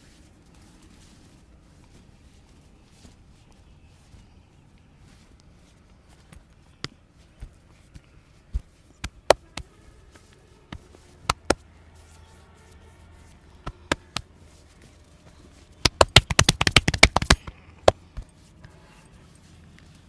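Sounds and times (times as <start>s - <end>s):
fast flurry of hand strikes: 8.4s - 12.1s, 13.6s - 14.6s, 15.5s - 18.5s
hand slaps on head: 15.8s - 18.3s.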